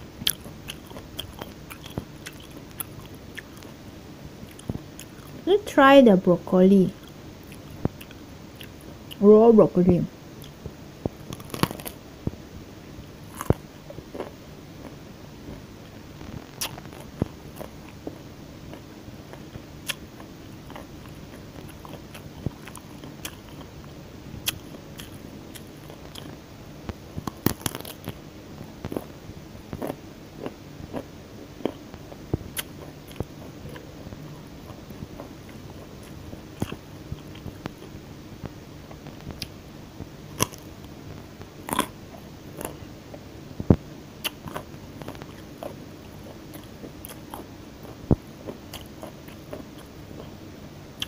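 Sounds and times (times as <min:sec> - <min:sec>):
raw broccoli crunching: 0:11.2 - 0:12.0, 0:13.3 - 0:15.0, 0:27.2 - 0:28.2.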